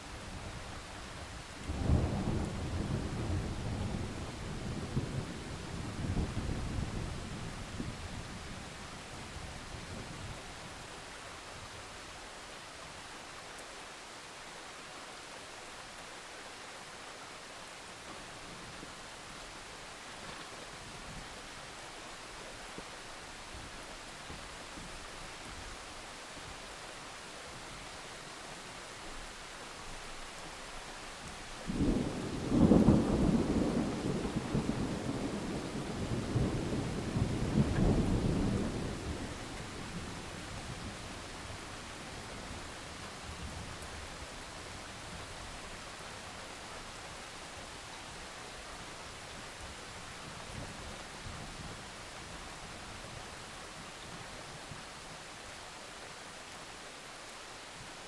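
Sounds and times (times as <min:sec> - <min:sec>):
steady rain: 0:00.0 - 0:58.0
thunder rumbling: 0:31.7 - 0:42.7.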